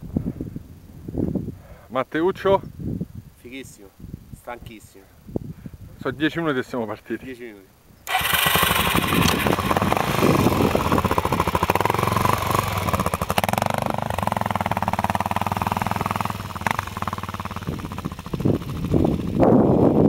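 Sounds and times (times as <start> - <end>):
motorcycle engine running: 8.1 - 20.0.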